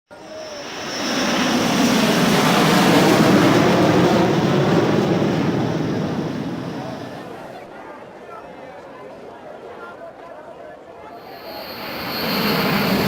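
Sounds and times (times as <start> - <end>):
faint high whine: 0.1 - 4.0, 11.1 - 13.0
fighter jet flying past: 0.1 - 7.6, 11.2 - 13.0.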